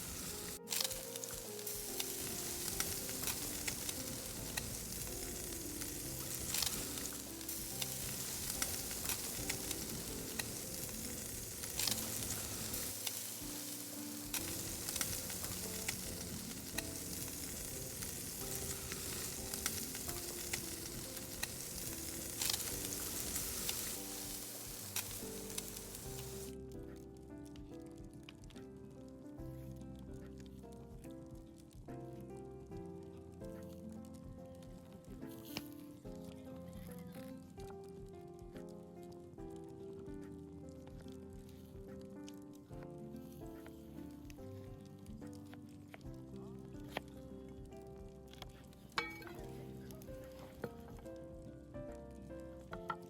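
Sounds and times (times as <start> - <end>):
burger patties sizzling: 0.0 - 26.5, 48.9 - 50.8
pops and crackles: 0.0 - 53.0
soft background music: 0.0 - 53.0.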